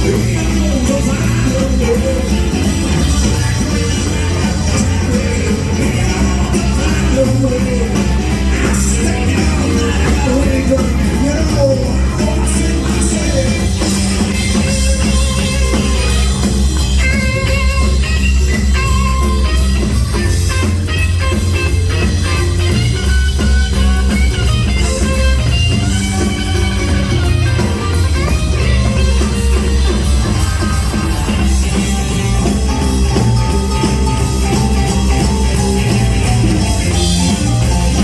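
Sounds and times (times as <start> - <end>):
blues-rock band playing: 0.0 - 38.0
drum kit: 0.0 - 38.0
electric guitar melody: 0.0 - 38.0.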